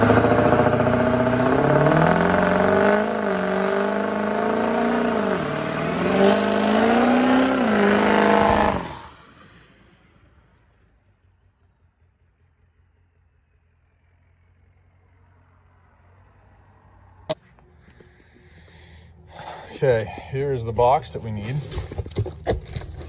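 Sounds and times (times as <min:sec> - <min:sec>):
vehicle engine revving: 0:00.0 - 0:09.7.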